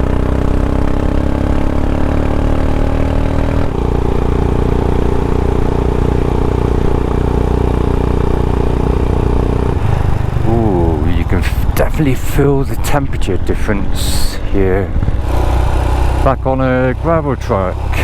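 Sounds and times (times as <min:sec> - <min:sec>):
motorcycle engine accelerating: 0:00.0 - 0:18.0.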